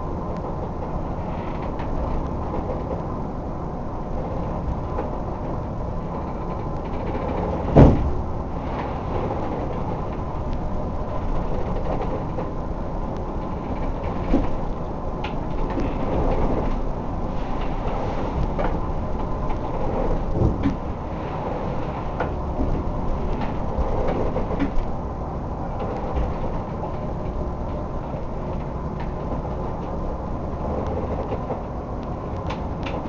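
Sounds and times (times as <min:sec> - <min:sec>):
faint steady hum: 0:00.0 - 0:33.0
low rumble on boat: 0:00.0 - 0:33.0
knocks and rattles: 0:06.2 - 0:10.3, 0:17.6 - 0:20.9.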